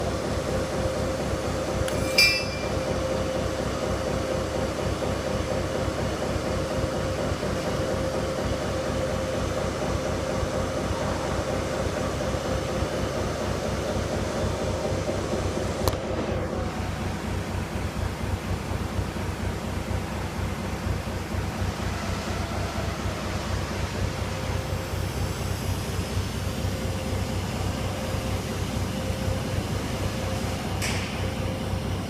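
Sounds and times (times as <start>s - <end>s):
welding machine buzzing hum: 1.6s - 3.5s
short metallic clink: 1.9s - 2.8s.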